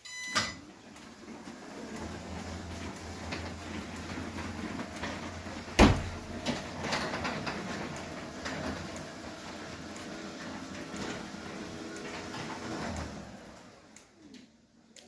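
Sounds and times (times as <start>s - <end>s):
garage door motor humming: 0.6s - 14.1s
loud knock from door: 5.8s - 6.2s.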